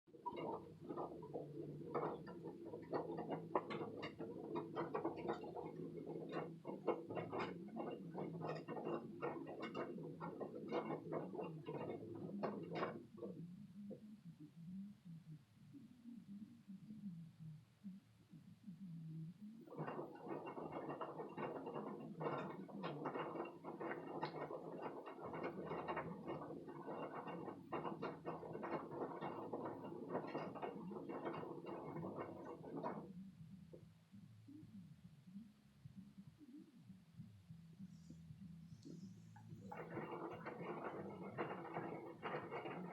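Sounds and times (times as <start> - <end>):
washing machine clattering: 0.2 - 13.3, 19.7 - 33.1, 39.4 - 42.9.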